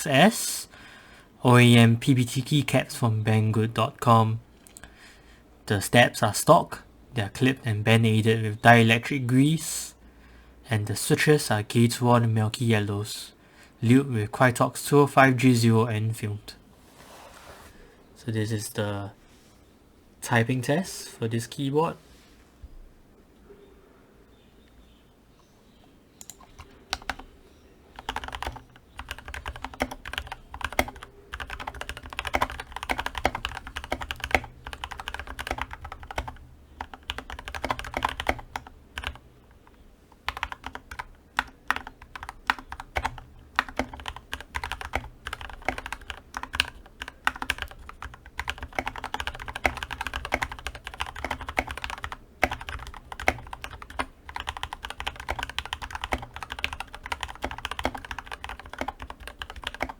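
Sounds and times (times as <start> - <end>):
fast mechanical keyboard typing: 26.3 - 27.3, 28.0 - 39.2, 40.2 - 59.9.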